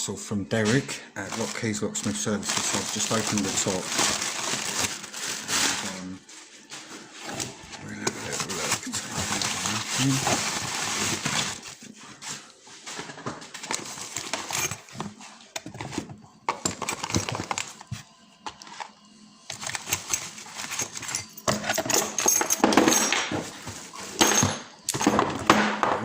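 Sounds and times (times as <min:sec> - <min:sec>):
packaging rustling: 0:01.2 - 0:12.0, 0:13.5 - 0:21.4.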